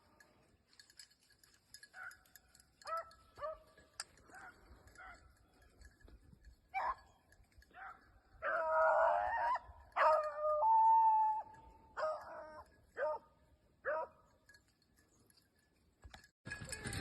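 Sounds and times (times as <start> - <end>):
dog barking: 2.9 - 3.7, 4.3 - 5.3, 12.0 - 14.2.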